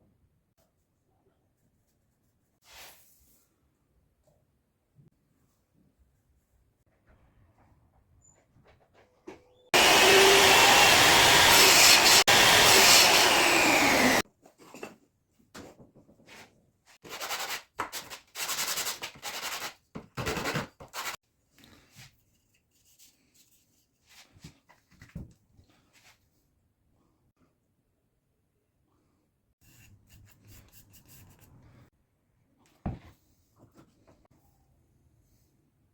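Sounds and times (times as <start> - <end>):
power tool running: 9.8 - 14.2
rubbing strokes on wood: 9.8 - 14.2.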